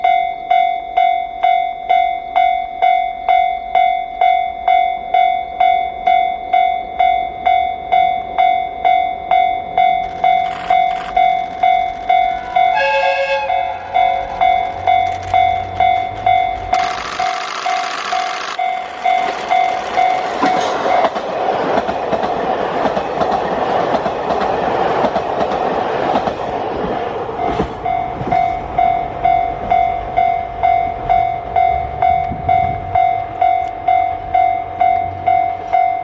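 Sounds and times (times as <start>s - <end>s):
level crossing bell ringing: 0.0s - 21.2s, 27.8s - 36.0s
train rumble: 7.0s - 36.0s
train horn blast: 12.4s - 14.4s.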